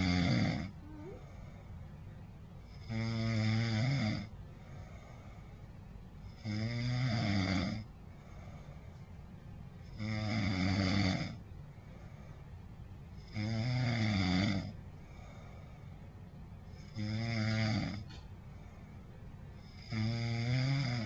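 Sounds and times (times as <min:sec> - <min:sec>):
person snoring: 0:00.0 - 0:01.2, 0:06.4 - 0:07.8, 0:09.9 - 0:11.4, 0:13.2 - 0:14.8, 0:16.8 - 0:18.0, 0:19.6 - 0:21.0.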